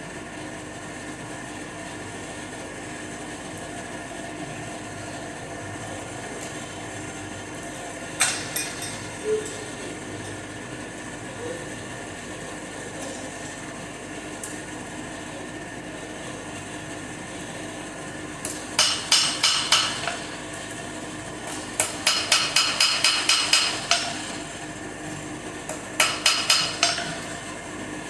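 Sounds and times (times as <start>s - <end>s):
hammer ringing on anvil: 8.2s - 10.4s, 18.5s - 20.5s, 21.5s - 24.4s, 26.0s - 27.4s.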